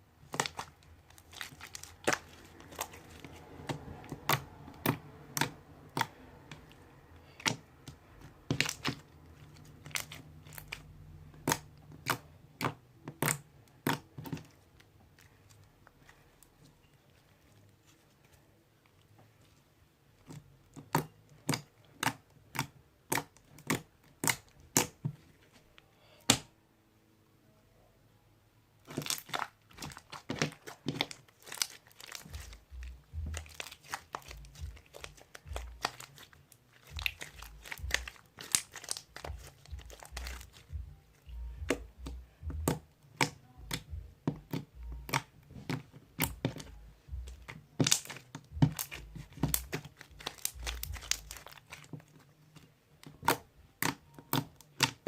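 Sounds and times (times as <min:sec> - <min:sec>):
crunch slime squished by hand: 0:00.2 - 0:18.1, 0:28.8 - 0:55.0
soft squelchy thuds: 0:28.9 - 0:54.0.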